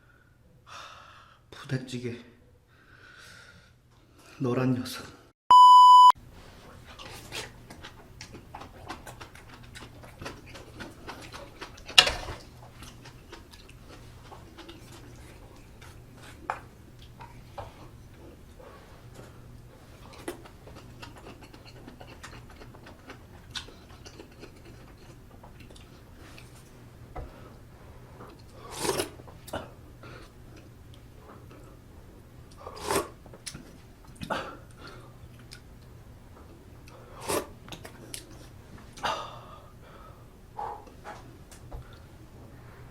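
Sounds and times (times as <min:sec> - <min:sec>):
loud electronic beep: 0:05.5 - 0:06.2
chewing: 0:06.8 - 0:18.4, 0:19.0 - 0:26.7, 0:32.5 - 0:35.7.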